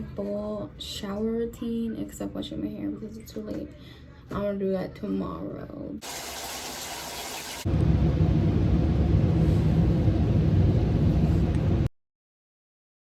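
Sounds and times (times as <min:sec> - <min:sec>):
shower water running: 0:06.0 - 0:07.7.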